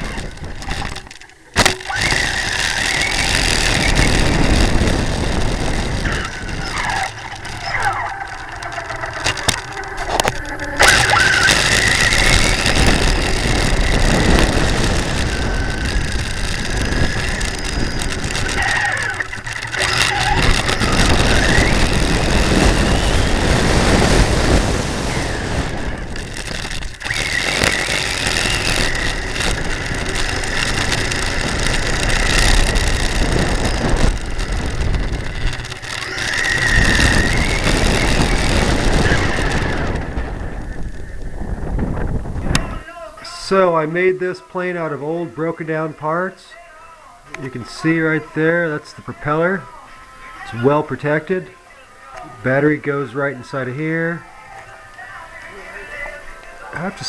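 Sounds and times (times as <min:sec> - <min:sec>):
model motor high whine: 0:00.0 - 0:42.6
loud rush of noise: 0:00.0 - 0:57.0.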